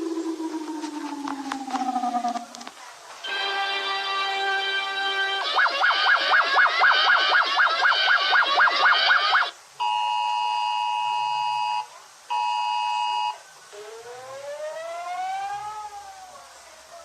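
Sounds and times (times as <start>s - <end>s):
fast warbling alarm tone: 0.0s - 2.6s, 5.4s - 9.5s, 13.0s - 16.2s
siren wail: 0.0s - 2.6s, 5.4s - 9.6s, 13.7s - 16.5s.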